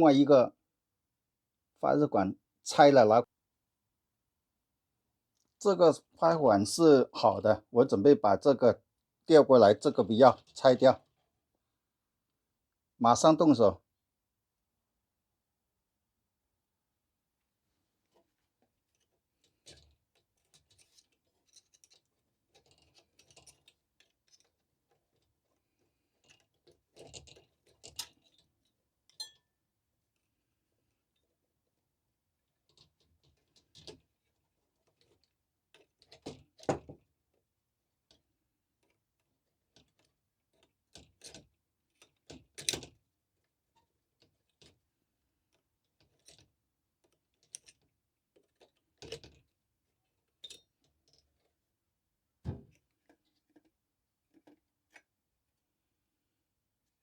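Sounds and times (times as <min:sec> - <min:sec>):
tools tapping on metal: 0:29.2 - 0:29.5.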